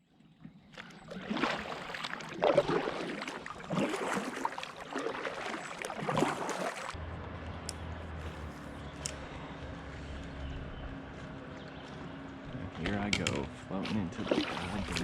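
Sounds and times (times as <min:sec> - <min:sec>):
paddle splashing through water: 0:00.6 - 0:07.0, 0:13.8 - 0:15.0.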